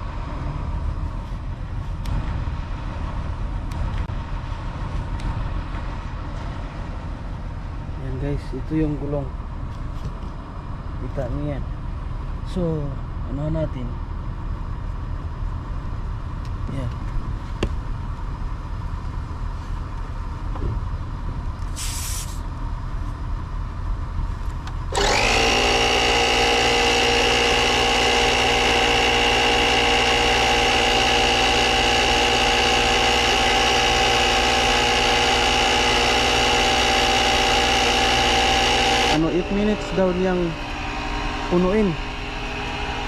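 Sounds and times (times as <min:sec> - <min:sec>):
brief hiss: 0:21.7 - 0:22.5
air compressor whining: 0:24.8 - 0:43.0.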